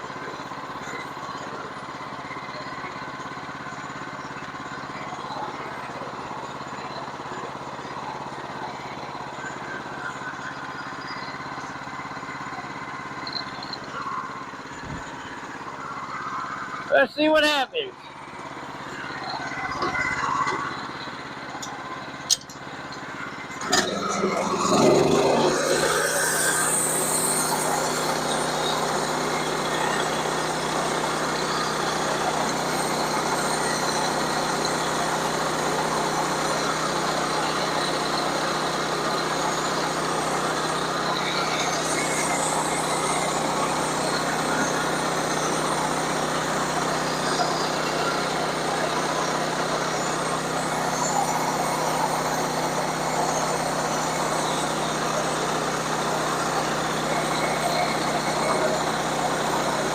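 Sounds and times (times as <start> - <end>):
engine humming: 0.0 - 59.9
saw cutting through log: 23.6 - 59.9.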